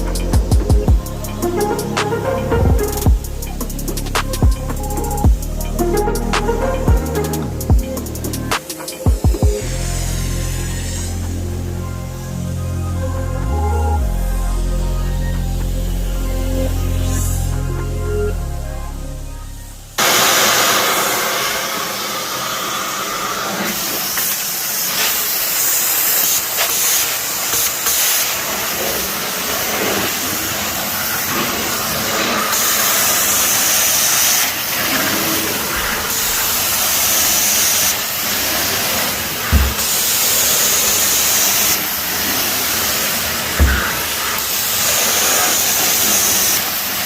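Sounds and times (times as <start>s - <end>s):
carpet extraction wand hissing: 0.0s - 12.6s, 20.0s - 47.0s
music: 0.0s - 20.6s, 32.5s - 47.0s.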